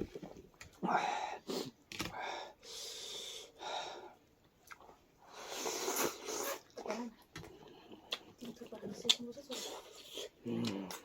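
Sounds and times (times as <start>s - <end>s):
loud breathing while eating: 0.8s - 4.2s, 5.2s - 6.5s
slurping noodle soup: 5.3s - 7.1s.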